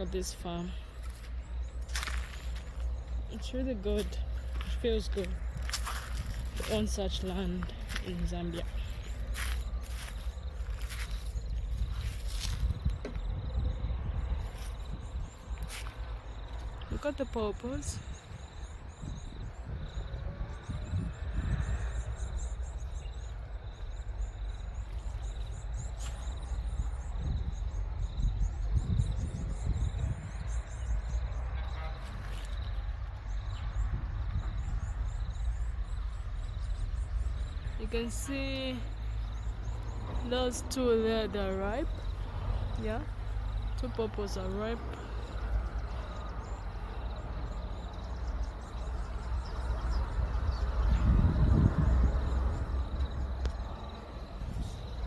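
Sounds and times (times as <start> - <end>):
wind rumbling on microphone: 0.0 - 55.0
high insect drone: 0.8 - 55.0
low microphone rumble: 47.8 - 55.0.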